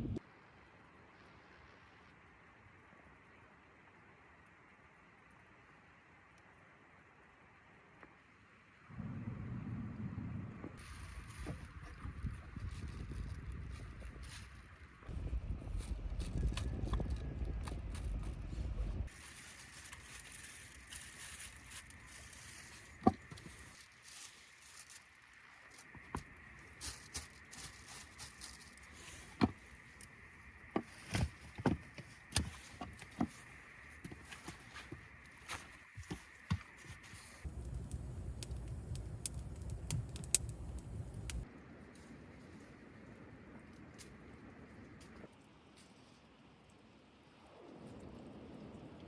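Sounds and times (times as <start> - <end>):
steady low rumble: 0.0 - 0.2, 8.9 - 22.6, 37.5 - 41.5
wind buffeting microphone: 9.0 - 19.2, 37.5 - 41.4
outdoor hiss: 19.0 - 41.5.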